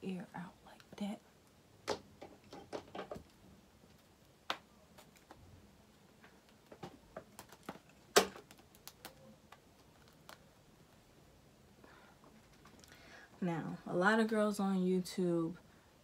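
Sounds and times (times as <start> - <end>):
hands handling objects clicking: 6.4 - 10.5.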